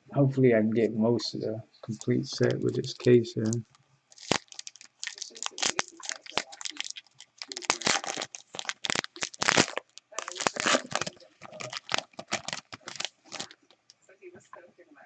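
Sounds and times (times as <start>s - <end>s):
foil wrapper crinkling and tearing: 2.0s - 13.8s.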